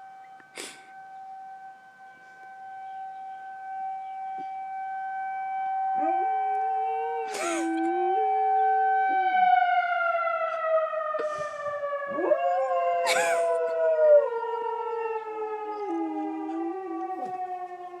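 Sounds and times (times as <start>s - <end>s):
warning siren winding down: 0.0s - 18.0s
dog howling: 6.0s - 8.7s, 12.1s - 15.0s, 15.7s - 17.6s
dog yelping: 13.0s - 13.5s.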